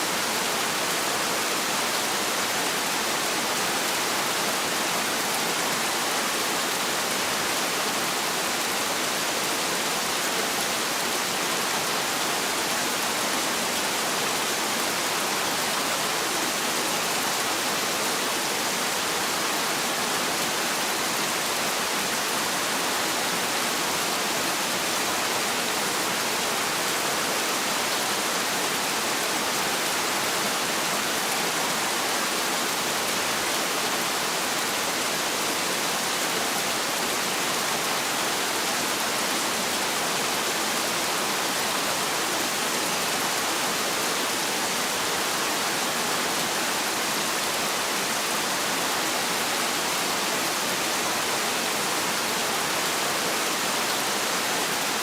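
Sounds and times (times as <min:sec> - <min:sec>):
heavy rain falling: 0:00.0 - 0:55.0.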